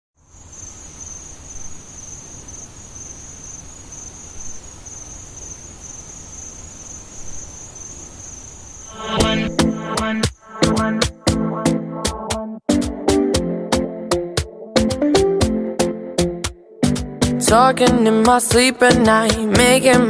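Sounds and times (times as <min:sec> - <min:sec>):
crickets chirping: 0:00.2 - 0:11.0
loud music with strong beat: 0:08.9 - 0:15.6, 0:16.2 - 0:17.6.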